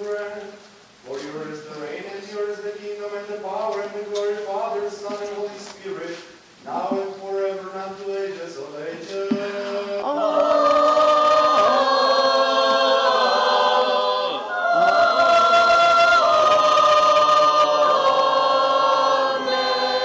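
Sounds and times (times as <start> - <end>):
choir singing a cappella: 1.1 - 20.0.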